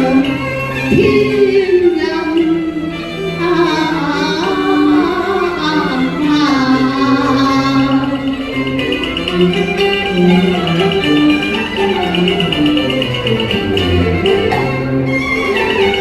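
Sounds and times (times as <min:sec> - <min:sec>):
instrumental accompaniment: 0:00.0 - 0:16.0
women singing opera duet: 0:00.9 - 0:02.6, 0:03.2 - 0:08.5.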